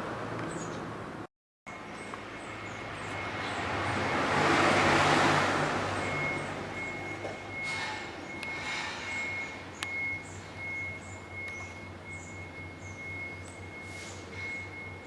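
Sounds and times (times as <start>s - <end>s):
car passing by: 2.3s - 9.4s.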